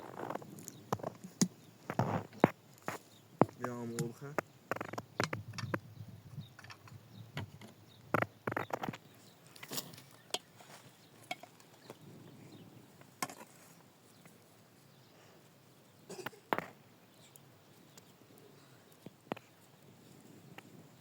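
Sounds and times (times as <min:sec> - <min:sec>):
sharp knocks and clicks: 0:03.4 - 0:05.8.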